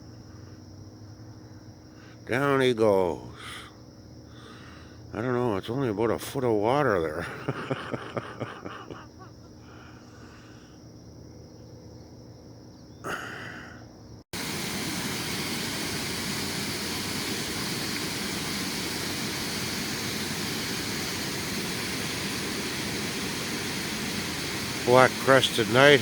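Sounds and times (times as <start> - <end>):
insects buzzing faintly: 0.0 - 26.0
loud even rushing noise: 14.4 - 26.0.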